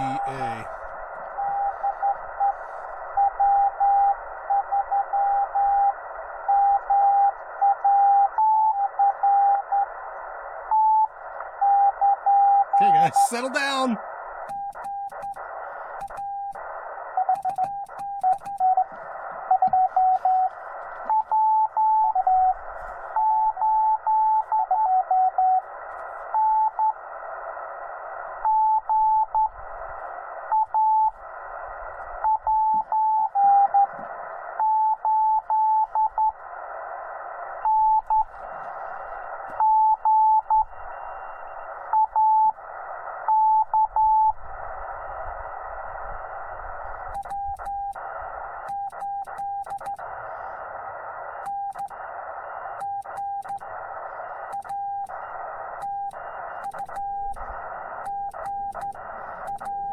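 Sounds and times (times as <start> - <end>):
radio band hiss: 0.0 - 3.2, 12.8 - 21.1, 22.0 - 23.6, 36.3 - 39.6, 44.8 - 59.7.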